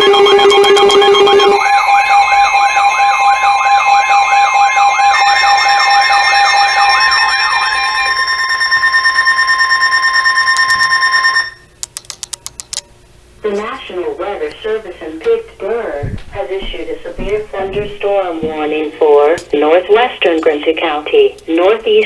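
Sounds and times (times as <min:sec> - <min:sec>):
siren-like electronic wail: 0:00.0 - 0:11.7
steady electronic alarm tones: 0:00.0 - 0:11.8, 0:14.1 - 0:21.7.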